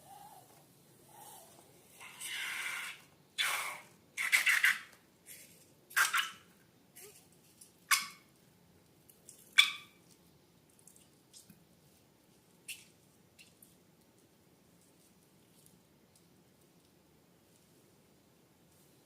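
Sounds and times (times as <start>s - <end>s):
wet hissy slime bursts: 2.2s - 4.6s.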